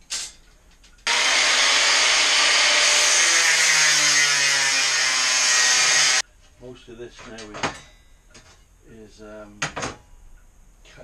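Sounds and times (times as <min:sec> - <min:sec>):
power tool cutting steel: 0:01.1 - 0:06.2.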